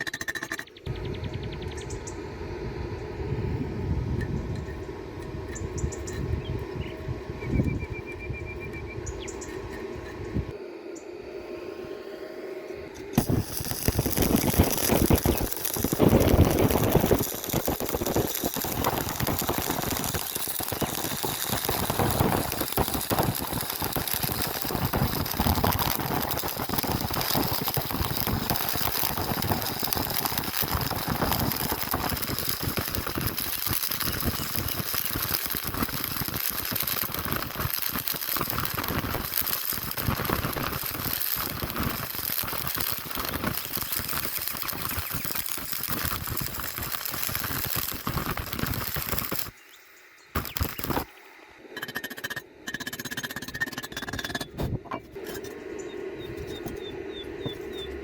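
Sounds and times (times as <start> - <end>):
welding arc crackling: 13.2 - 49.8, 50.4 - 51.2.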